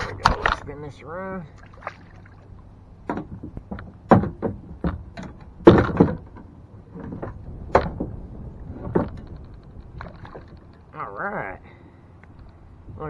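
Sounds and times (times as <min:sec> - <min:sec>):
gear knocking against kayak: 0:00.0 - 0:00.8, 0:01.5 - 0:10.9.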